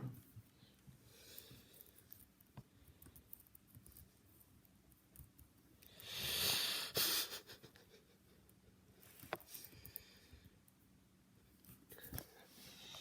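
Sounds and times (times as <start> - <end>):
loud breathy hiss: 6.0 - 7.4.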